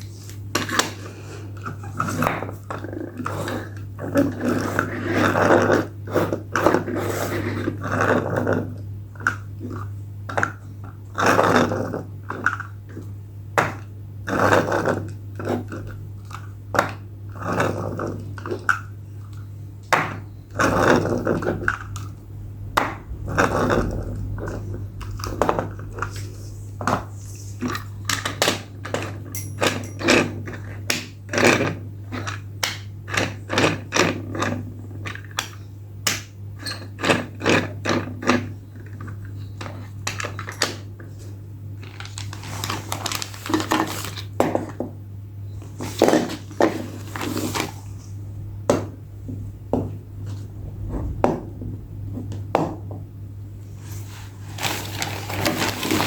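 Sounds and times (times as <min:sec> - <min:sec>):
steady low hum: 0:00.0 - 0:56.0
packaging crinkling and clicking: 0:41.8 - 0:44.4, 0:54.6 - 0:56.0.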